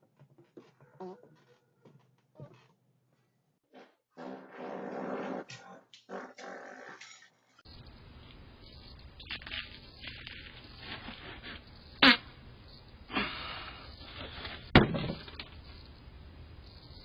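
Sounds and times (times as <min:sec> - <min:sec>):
farts: 0:03.7 - 0:07.0.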